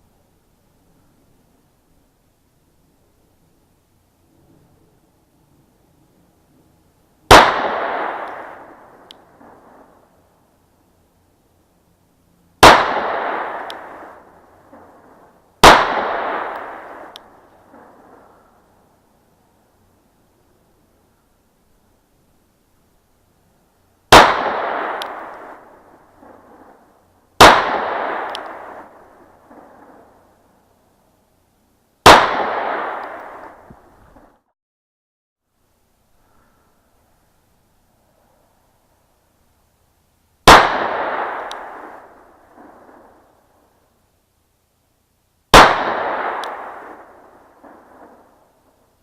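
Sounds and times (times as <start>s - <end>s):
pistol shots with echo: 7.3s - 9.9s, 12.6s - 15.0s, 15.6s - 17.1s, 24.1s - 26.8s, 27.4s - 30.2s, 32.0s - 33.7s, 40.4s - 43.2s, 45.5s - 48.4s.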